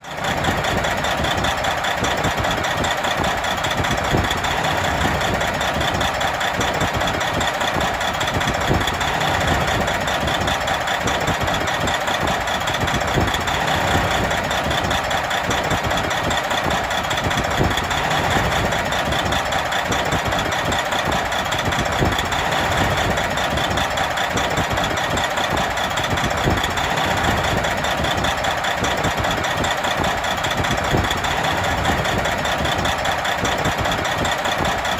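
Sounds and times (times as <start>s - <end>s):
truck diesel engine idling: 0.0s - 34.9s.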